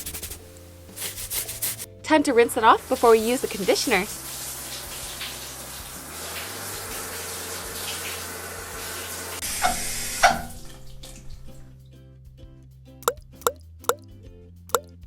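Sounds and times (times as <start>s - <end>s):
running water hissing: 0.0s - 2.0s, 2.8s - 11.8s.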